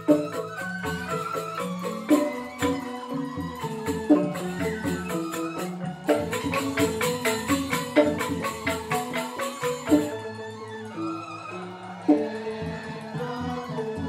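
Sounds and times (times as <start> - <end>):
drum: 0.0 - 10.2
small cymbals: 0.0 - 13.8
bamboo xylophones: 0.0 - 14.0.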